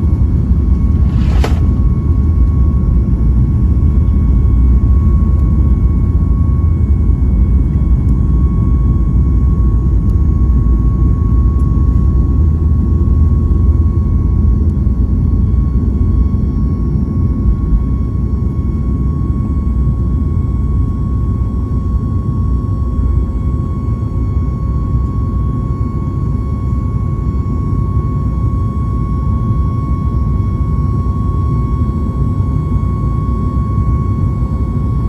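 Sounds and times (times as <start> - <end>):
airplane cabin engine rumble: 0.0 - 16.0.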